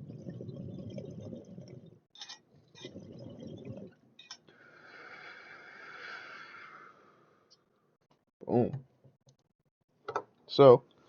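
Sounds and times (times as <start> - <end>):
rushing inhale draws: 4.5 - 7.4
breathy hiss: 4.5 - 7.5.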